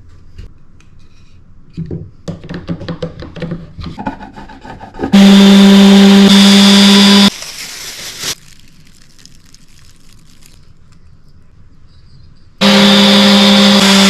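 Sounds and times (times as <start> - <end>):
power tool whining: 5.2 - 7.3, 12.6 - 14.0.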